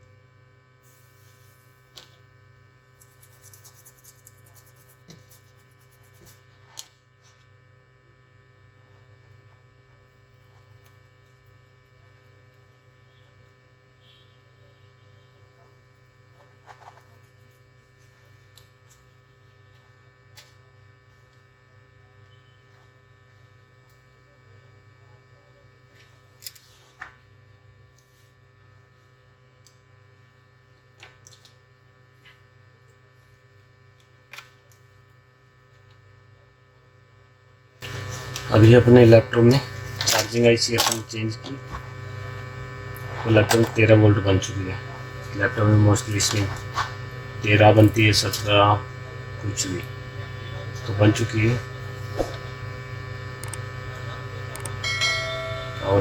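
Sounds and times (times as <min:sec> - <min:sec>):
faint electrical hum: 0:00.0 - 0:56.0.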